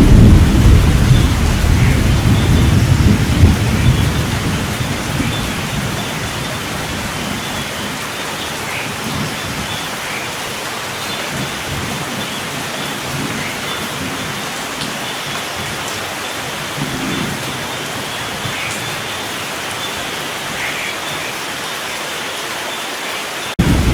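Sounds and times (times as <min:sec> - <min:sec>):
low rumble of thunder: 0:00.0 - 0:07.6, 0:23.6 - 0:23.9
rain falling: 0:00.0 - 0:23.9.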